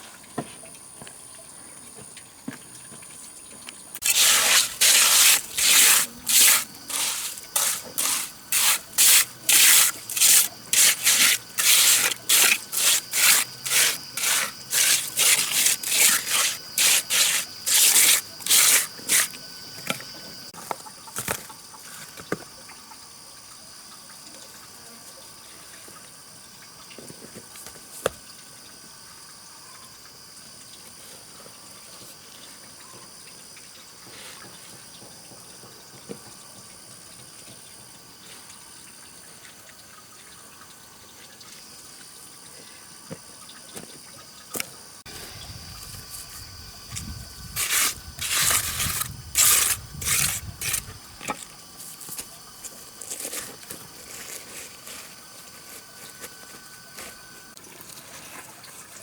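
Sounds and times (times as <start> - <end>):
rhythmic rasping strokes: 4.0 - 19.4.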